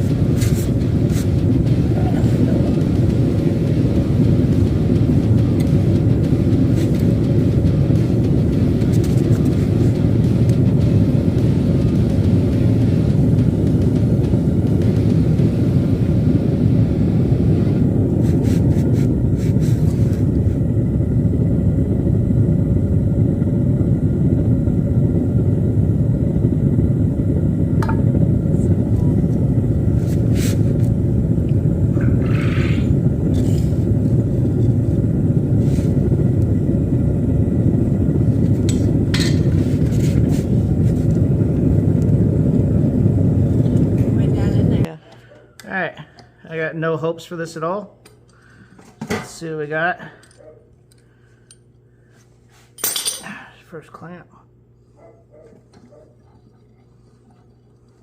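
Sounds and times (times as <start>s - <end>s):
furnace roaring: 0.0s - 58.0s
metallic clinks and scrapes: 52.7s - 53.3s.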